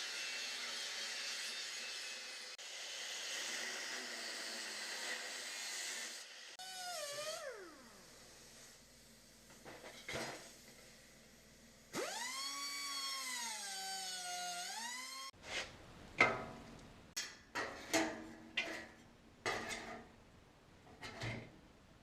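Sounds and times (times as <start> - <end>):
knocks and clanks on metal: 16.2 - 16.6.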